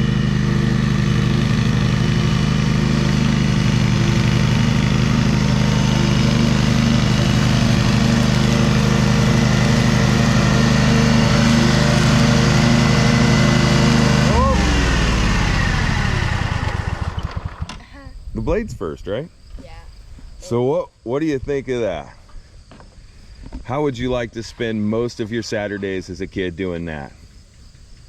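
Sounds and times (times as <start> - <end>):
riding lawn mower engine: 0.0 - 17.8.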